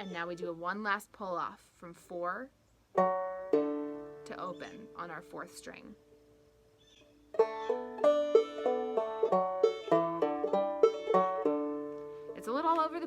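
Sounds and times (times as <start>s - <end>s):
banjo plucked notes: 3.0s - 5.2s, 7.3s - 13.0s.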